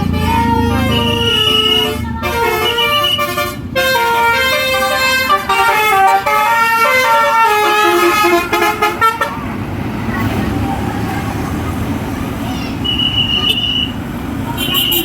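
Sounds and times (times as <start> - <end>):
musical bus horn playing tune: 0.0 - 9.6, 12.8 - 15.0.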